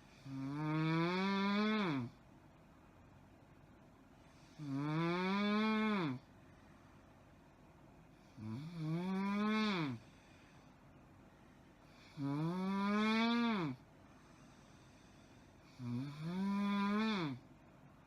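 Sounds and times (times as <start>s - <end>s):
woman snoring loudly: 0.0s - 2.2s, 4.4s - 6.2s, 8.3s - 10.1s, 12.0s - 13.8s, 15.7s - 17.4s.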